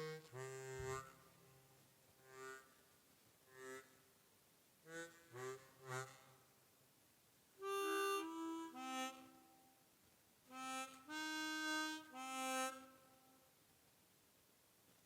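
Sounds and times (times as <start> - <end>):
bass harmonica held notes: 0.0 - 2.7, 3.5 - 4.0, 4.9 - 6.4, 7.6 - 9.7, 10.5 - 13.4.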